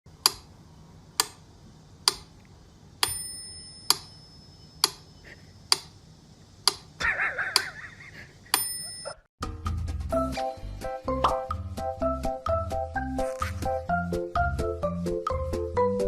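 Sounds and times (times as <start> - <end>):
sharp ticks: 2.0 - 2.3, 6.6 - 6.9.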